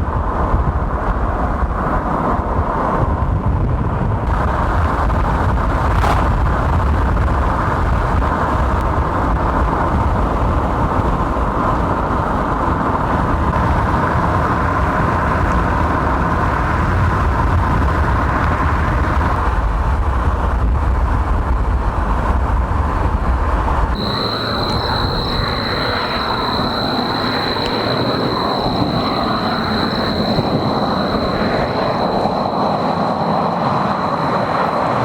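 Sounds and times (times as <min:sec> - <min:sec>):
car road and engine rumble: 0:00.0 - 0:35.0
steady high-pitched tone: 0:24.0 - 0:35.0.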